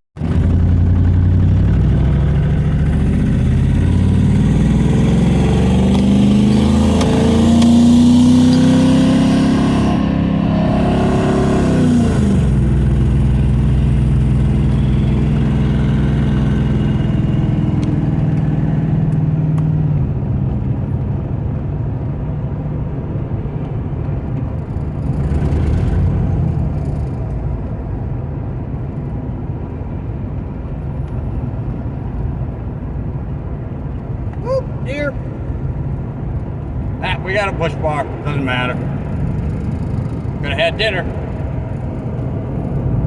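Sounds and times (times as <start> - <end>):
car engine pulling: 0.2 - 18.6, 33.6 - 43.0
road noise: 0.2 - 43.0.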